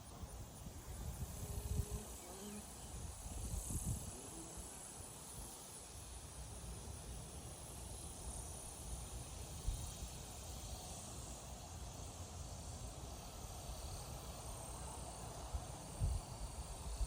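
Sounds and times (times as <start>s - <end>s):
steady high hiss: 0.0s - 17.0s
wind rumbling on microphone: 0.2s - 4.7s.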